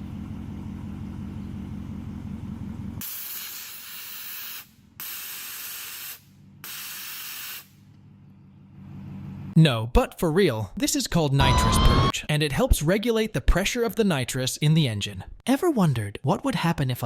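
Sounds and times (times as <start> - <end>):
car engine idling: 0.0 - 3.0
nitrous purge valve hissing blasts: 3.0 - 7.7.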